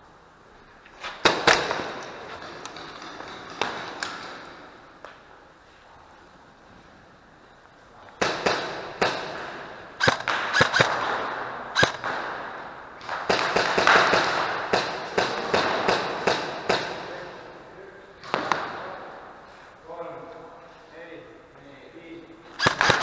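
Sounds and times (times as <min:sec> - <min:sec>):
airsoft gunfire cracks: 0:08.2 - 0:16.9, 0:22.6 - 0:23.0.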